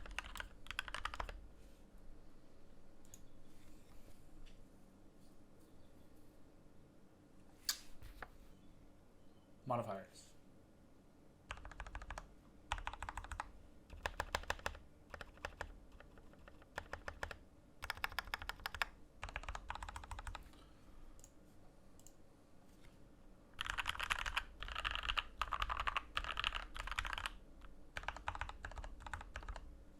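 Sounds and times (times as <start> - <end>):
mechanical keyboard typing: 0.0 - 1.4, 11.5 - 20.5, 23.6 - 29.7.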